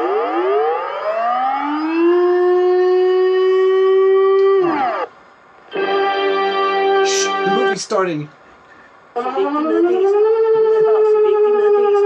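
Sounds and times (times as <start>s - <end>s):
warning siren: 0.0s - 5.1s, 9.2s - 12.0s.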